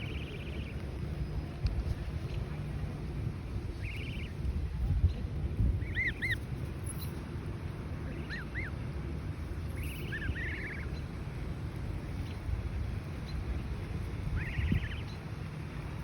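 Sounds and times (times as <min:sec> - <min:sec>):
gosling peeping: 0:00.0 - 0:01.6, 0:03.7 - 0:04.4, 0:05.8 - 0:06.5, 0:08.0 - 0:08.8, 0:09.8 - 0:11.2, 0:13.2 - 0:15.2
steady low rumble: 0:00.0 - 0:16.0.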